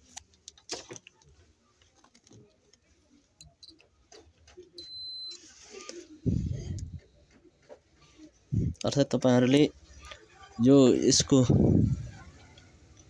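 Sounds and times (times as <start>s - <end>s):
multimeter high-pitched beep: 4.8s - 5.4s.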